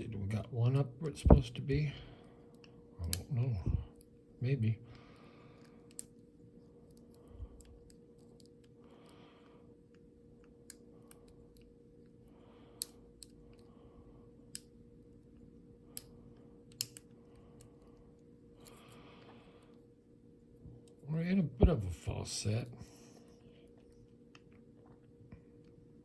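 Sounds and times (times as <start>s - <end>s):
soft breaths: 4.8s - 9.9s, 12.1s - 14.5s, 15.8s - 20.1s
lock pick clicking in padlock: 16.7s - 17.0s.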